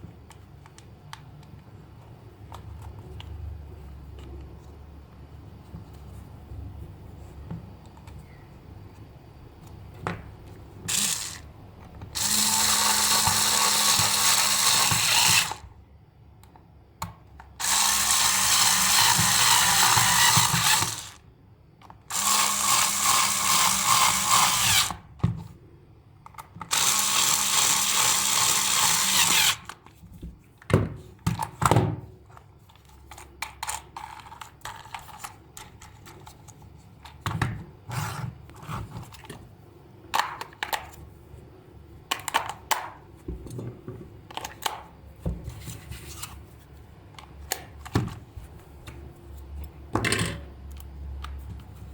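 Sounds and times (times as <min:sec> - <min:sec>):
small power tool running: 0:10.9 - 0:11.4, 0:12.2 - 0:15.6, 0:17.6 - 0:21.2, 0:22.1 - 0:25.0, 0:26.7 - 0:29.8.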